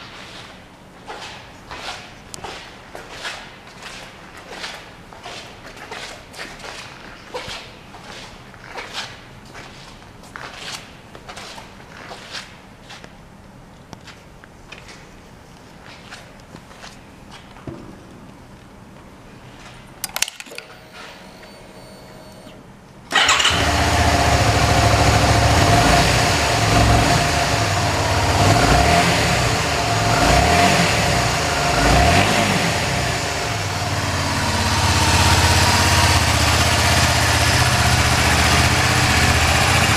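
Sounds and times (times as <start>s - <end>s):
motorcycle engine starting and idling: 20.0s - 39.9s.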